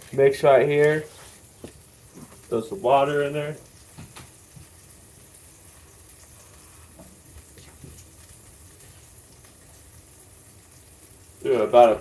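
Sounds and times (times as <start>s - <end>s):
burger patty sizzling in a pan: 0.0s - 12.0s.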